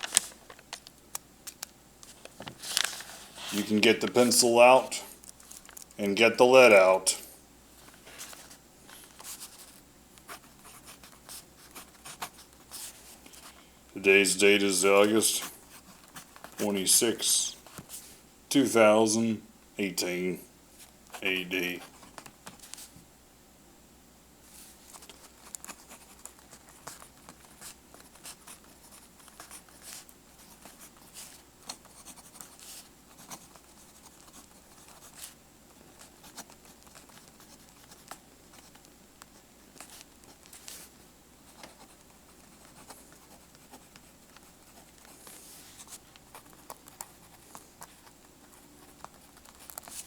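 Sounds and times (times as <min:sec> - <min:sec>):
pencil scratching on paper: 0:25.6 - 0:40.9, 0:41.5 - 0:50.0.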